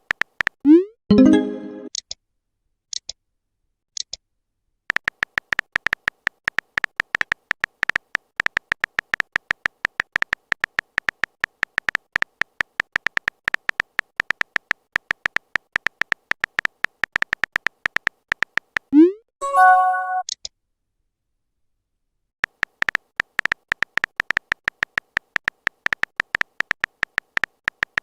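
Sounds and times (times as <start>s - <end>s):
message sent notification chime: 1.1s - 1.9s, 19.4s - 20.2s
phone keyboard typing clicks: 4.9s - 18.9s, 22.4s - 28.0s.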